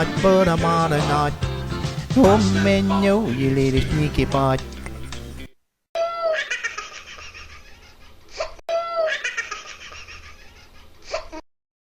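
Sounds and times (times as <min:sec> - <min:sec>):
high-pitched laughter: 0:06.0 - 0:11.4.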